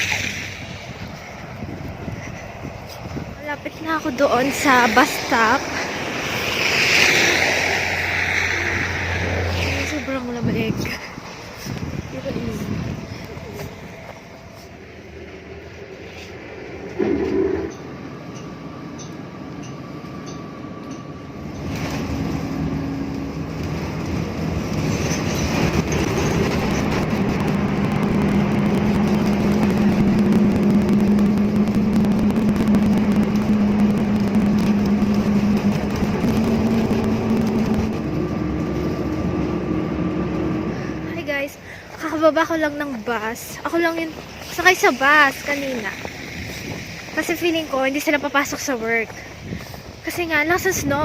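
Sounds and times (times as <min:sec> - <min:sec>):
bus engine hum and rattling: 0:00.0 - 0:51.0
short loud sound: 0:16.8 - 0:18.0.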